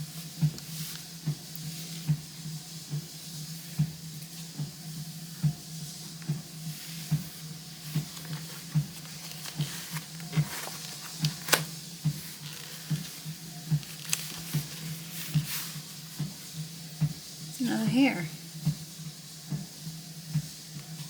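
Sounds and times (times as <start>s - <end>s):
handling leather cover and notebook: 7.1s - 15.8s.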